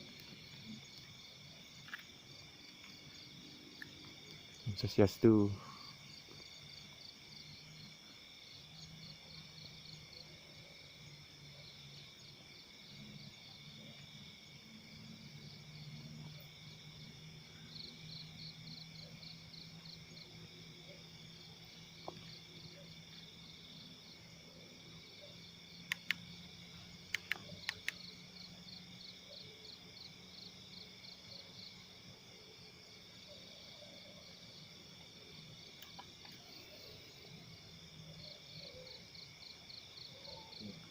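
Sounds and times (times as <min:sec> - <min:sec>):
crickets and insects trilling: 0:00.0 - 0:40.9
pulsing insect chirp: 0:00.0 - 0:40.9
sharp clicks: 0:25.8 - 0:26.3, 0:27.1 - 0:28.0.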